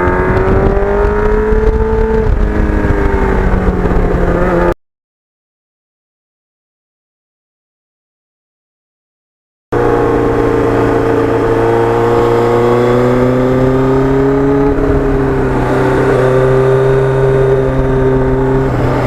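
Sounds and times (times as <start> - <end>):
motorcycle engine running: 0.0 - 4.7, 9.8 - 19.0.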